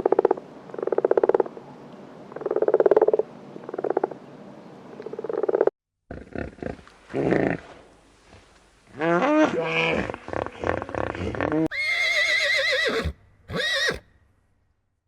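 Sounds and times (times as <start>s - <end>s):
animal rasping pulsing calls: 9.0s - 14.0s.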